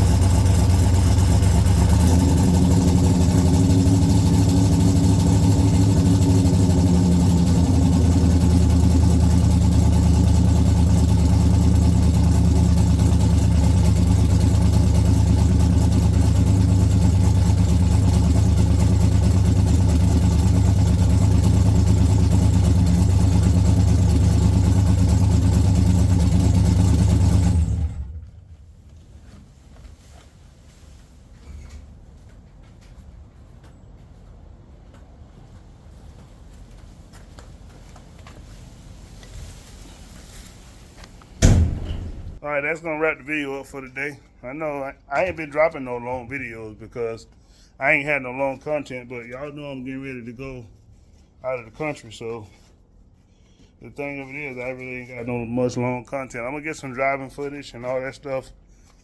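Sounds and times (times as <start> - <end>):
car engine idling: 0.0 - 28.7.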